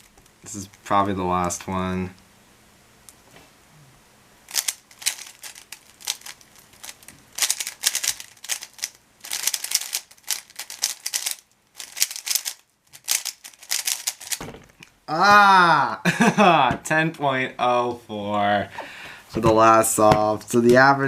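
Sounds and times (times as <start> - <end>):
puzzle cube turning clicks: 4.5 - 14.9.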